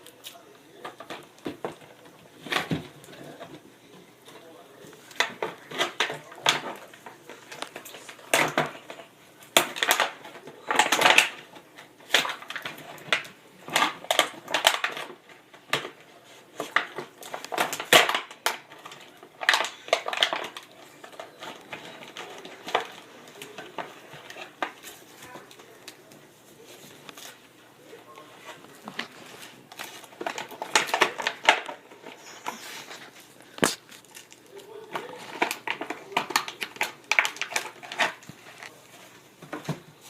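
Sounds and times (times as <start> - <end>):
hard plastic toy clicking and clattering: 4.3 - 26.1, 29.7 - 32.6, 33.6 - 38.7.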